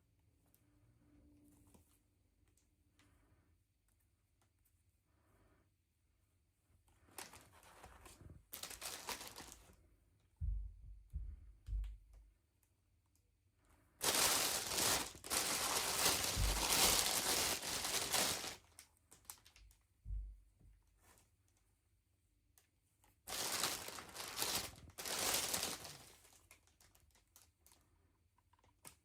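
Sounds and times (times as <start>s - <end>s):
packaging crinkling and tearing: 8.5s - 9.6s, 14.0s - 19.8s, 23.3s - 27.8s.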